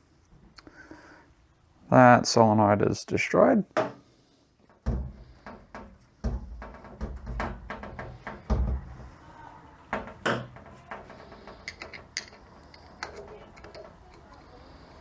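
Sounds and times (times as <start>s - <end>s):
heavy thumps: 4.7s - 9.3s, 9.9s - 12.4s
metal parts clicking and knocking: 10.0s - 14.5s.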